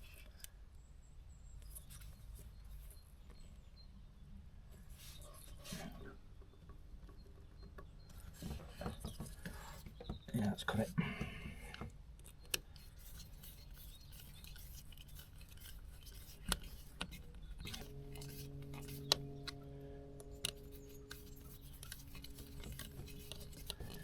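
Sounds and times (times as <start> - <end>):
low steady hum: 10.6 - 24.0.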